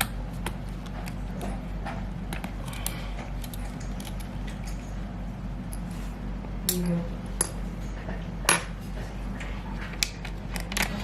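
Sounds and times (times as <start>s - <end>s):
small parts clicking and tapping: 0.0s - 5.0s, 9.9s - 11.0s
steady low hum: 0.0s - 11.0s.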